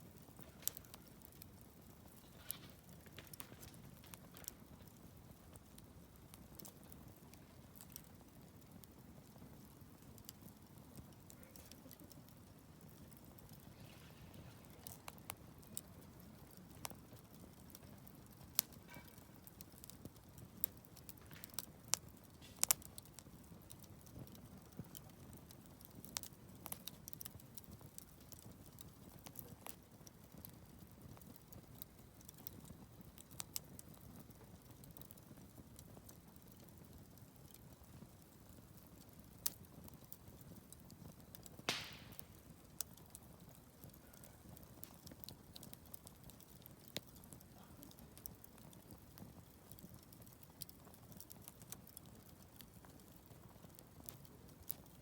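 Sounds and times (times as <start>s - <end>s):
low rush of flame: 0.0s - 25.4s, 41.7s - 42.8s
wood fire crackling: 0.0s - 55.0s.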